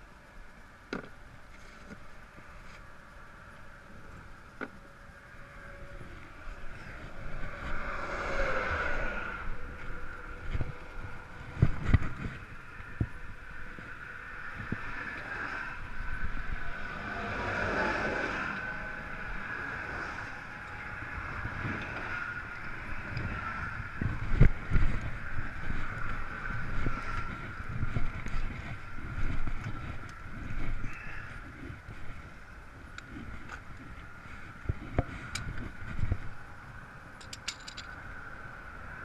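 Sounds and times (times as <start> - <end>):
traffic: 0.0 - 39.0
wind on microphone: 1.5 - 39.0
vehicle passing: 4.8 - 31.4.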